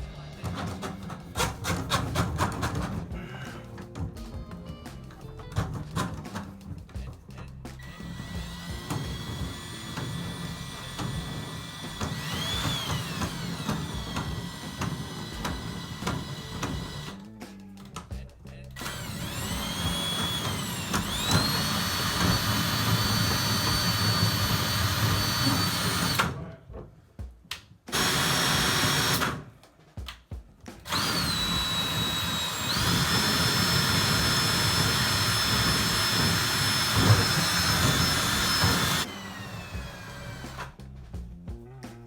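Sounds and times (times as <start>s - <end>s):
drain cleaning machine motor whine: 7.8s - 17.2s, 18.8s - 26.4s, 30.9s - 40.7s.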